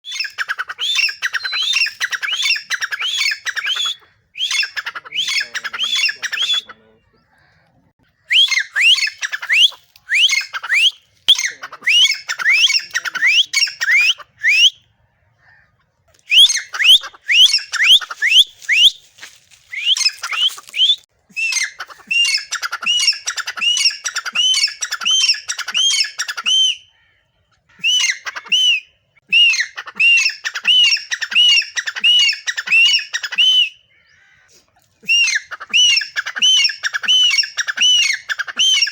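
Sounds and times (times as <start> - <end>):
francolin calling shrill notes: 0.0 - 6.7, 8.3 - 14.8, 16.3 - 26.9.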